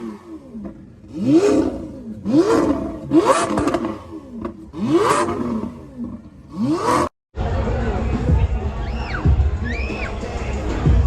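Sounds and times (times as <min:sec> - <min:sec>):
exhaust crackles: 0:00.0 - 0:07.1
engine revving: 0:00.0 - 0:07.2.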